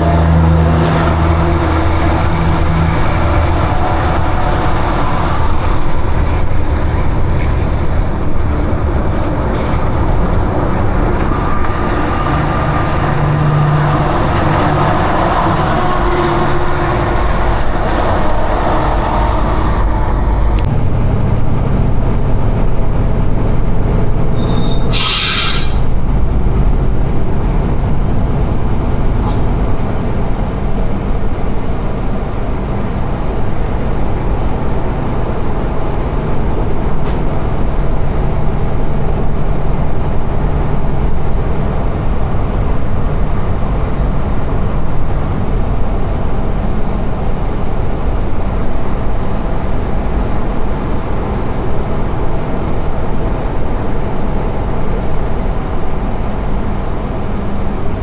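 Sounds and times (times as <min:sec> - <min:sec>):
high squeal: 0:00.0 - 0:20.7, 0:24.2 - 0:26.4
heavy vehicles rumbling: 0:00.0 - 0:58.0.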